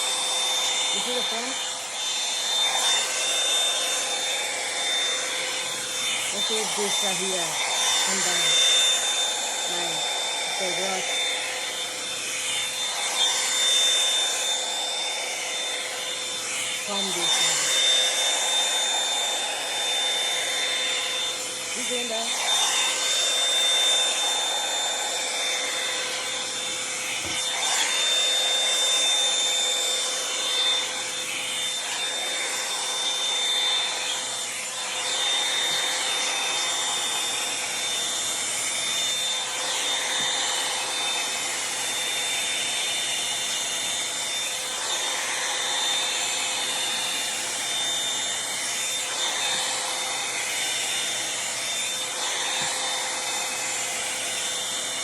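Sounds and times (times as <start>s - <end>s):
hair dryer air and motor whine: 0.0s - 55.0s.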